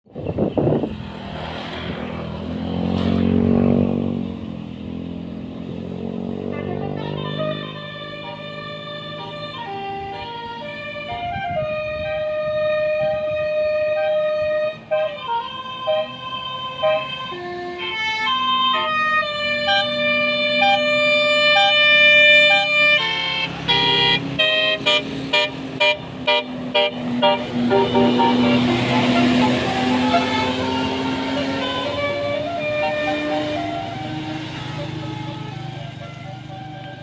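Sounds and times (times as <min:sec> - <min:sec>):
music with held notes: 0:06.6 - 0:17.8, 0:26.8 - 0:37.0.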